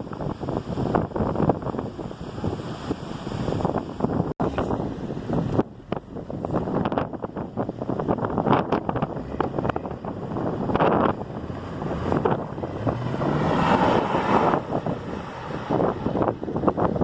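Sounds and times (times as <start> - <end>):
wind buffeting microphone: 0.0 - 17.0
vehicle engine running: 4.4 - 17.0.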